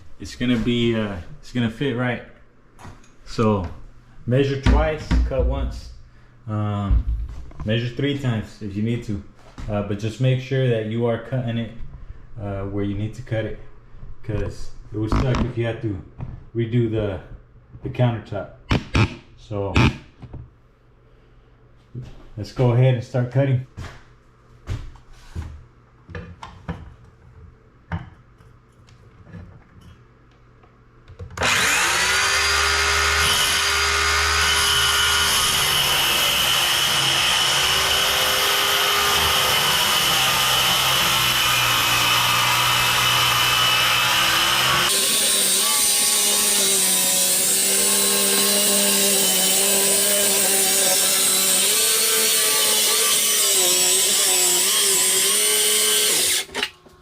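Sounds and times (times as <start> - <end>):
electric saw cutting: 31.4 - 56.7.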